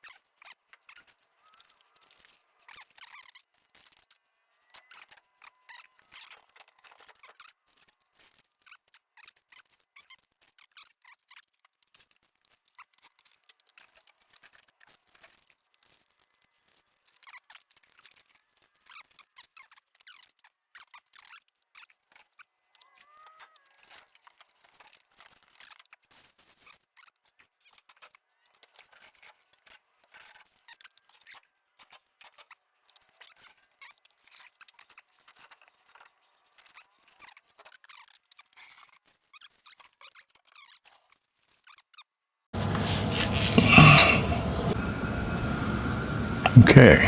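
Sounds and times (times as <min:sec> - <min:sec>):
brief squeaks: 0:42.6 - 0:46.6.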